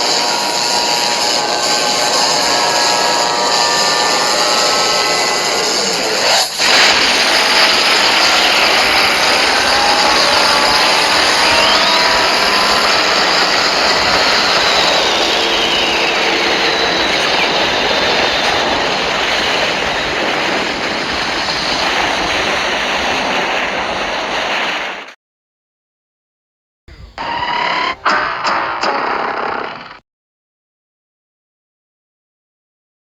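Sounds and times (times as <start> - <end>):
loud continuous rushing noise: 0.0 - 25.2.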